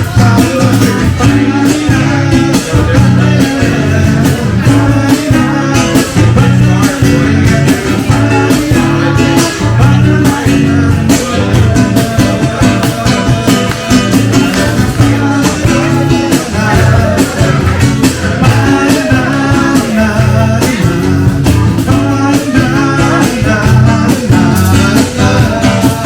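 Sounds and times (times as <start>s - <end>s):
band music with guitar and drums: 0.0s - 26.0s
person singing: 0.0s - 26.0s.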